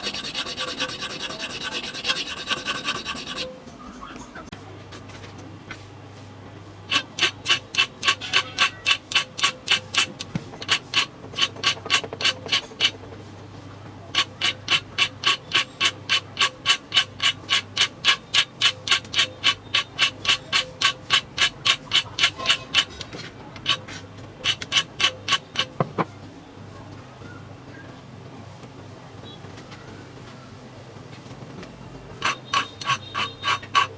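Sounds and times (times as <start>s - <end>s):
file strokes on knife blade: 0.0s - 3.5s, 6.9s - 13.0s, 32.2s - 33.9s.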